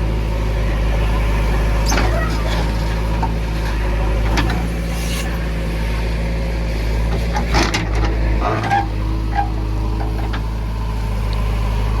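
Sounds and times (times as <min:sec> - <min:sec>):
heavy diesel engine running: 0:00.0 - 0:12.0
brief squeaks: 0:04.8 - 0:05.4.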